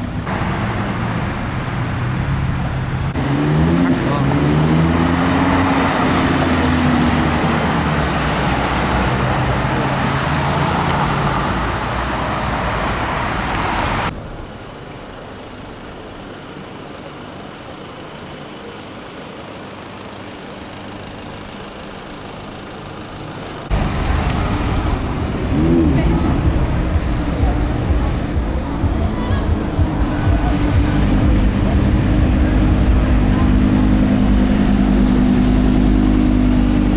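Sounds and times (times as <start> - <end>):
street traffic hum: 0.0 - 36.9
car engine running at low revs: 20.0 - 36.9.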